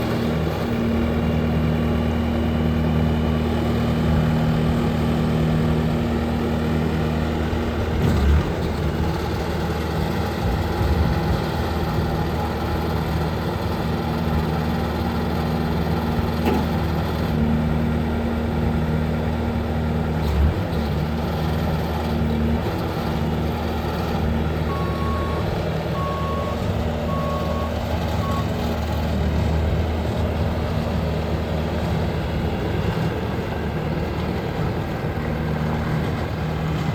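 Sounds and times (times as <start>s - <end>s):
diesel engine running: 0.0s - 36.9s
reversing alarm beeps: 24.7s - 28.5s.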